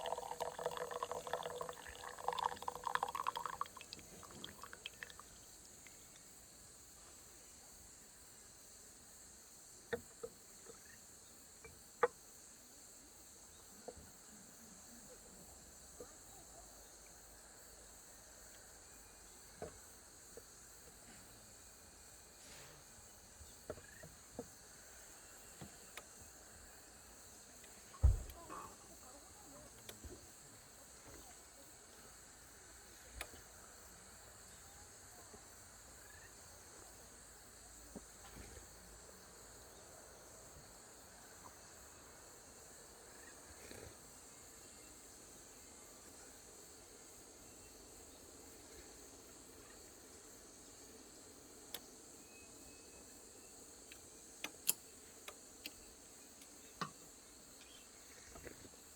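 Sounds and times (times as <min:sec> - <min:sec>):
high-pitched insect chorus: 0:00.0 - 0:58.9
loud thump: 0:28.0 - 0:28.6.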